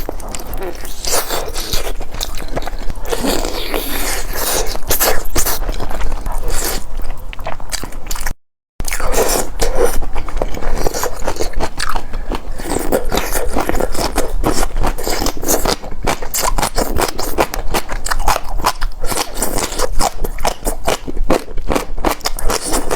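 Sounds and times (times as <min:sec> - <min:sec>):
chewing and crunching food: 0:00.0 - 0:22.9.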